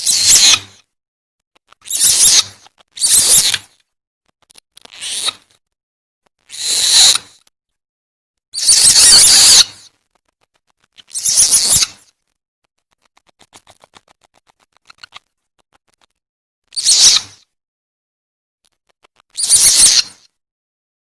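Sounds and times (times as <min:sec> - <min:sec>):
animal screeches: 0:00.0 - 0:00.8, 0:01.8 - 0:03.8, 0:04.8 - 0:05.5, 0:06.4 - 0:07.4, 0:08.6 - 0:09.9, 0:11.0 - 0:12.1, 0:16.7 - 0:17.5, 0:19.3 - 0:20.3
quick clicks: 0:09.9 - 0:16.2.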